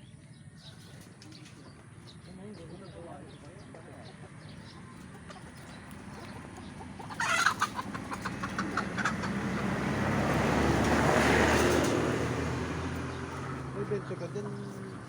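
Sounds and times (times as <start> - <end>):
vehicle passing: 1.7 - 15.0
chicken clucking and squawking: 3.7 - 11.8.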